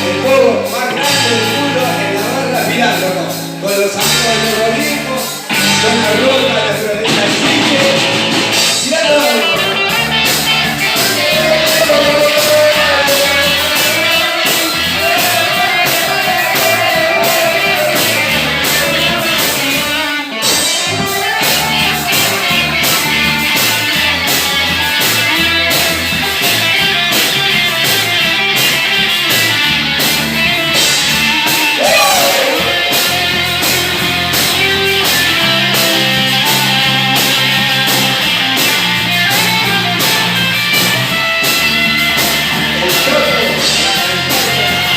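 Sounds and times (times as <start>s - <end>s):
person singing: 0.0s - 24.4s, 31.0s - 34.5s, 42.6s - 44.9s
rock band playing live: 0.0s - 44.9s.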